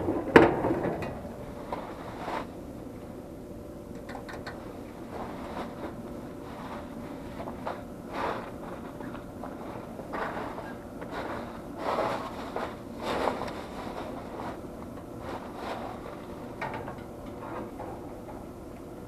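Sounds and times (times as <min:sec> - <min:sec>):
low background hum: 0:00.0 - 0:19.0
tools clunking and rattling: 0:16.6 - 0:18.5.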